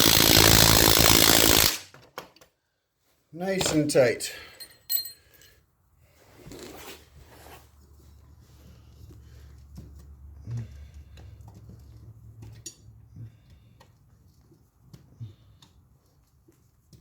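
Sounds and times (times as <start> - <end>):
metal tool clinks and knocks: 3.6 - 5.6.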